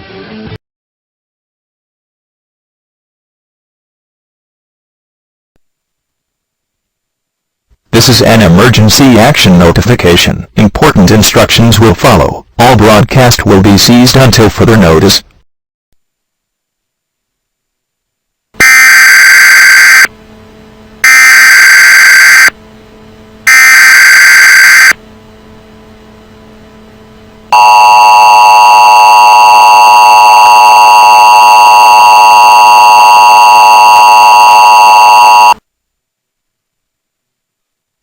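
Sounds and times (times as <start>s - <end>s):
loud buzzing data bursts: 27.5s - 35.6s
steady two-tone attention signal: 27.5s - 35.6s.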